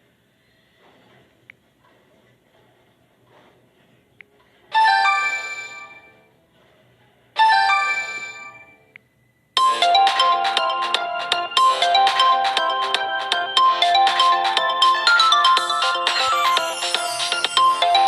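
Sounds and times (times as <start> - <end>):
bell-like notification chime: 9.6 - 18.0
fast melodic ringtone: 9.6 - 18.0.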